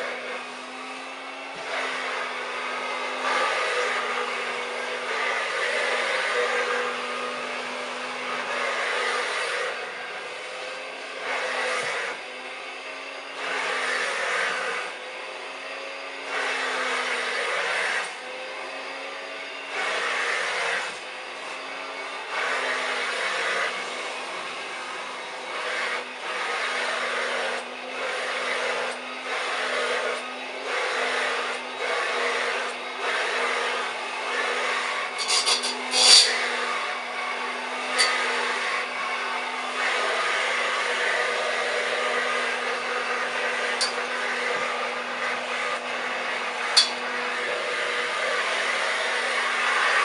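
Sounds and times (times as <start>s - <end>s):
hand vacuum cleaner running: 0.0s - 50.0s.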